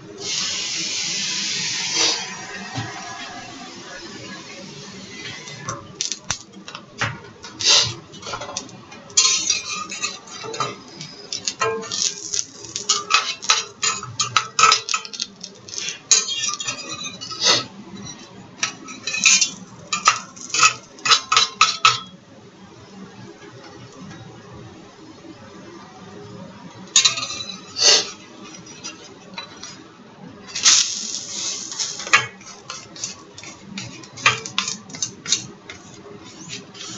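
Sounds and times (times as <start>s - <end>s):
metal utensil clinking on cookware: 30.5s - 35.8s.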